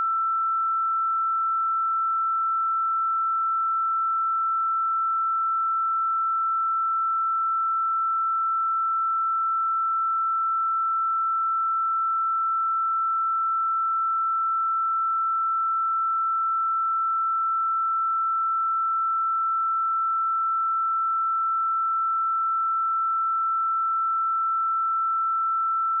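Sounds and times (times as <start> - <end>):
sine-wave test tone: 0.0 - 26.0.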